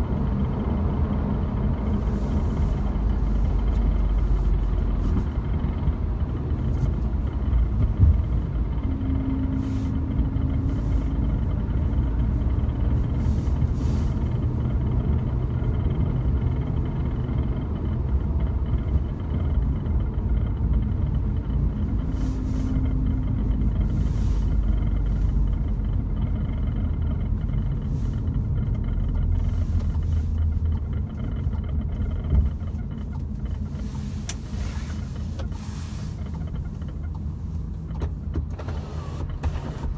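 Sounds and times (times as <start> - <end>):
road and engine noise: 0.0 - 39.9
interior rattle clicks and taps: 24.5 - 39.9.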